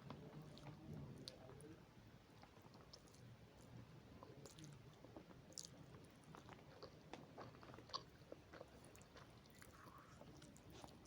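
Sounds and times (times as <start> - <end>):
person chewing noodles: 6.3 - 11.0.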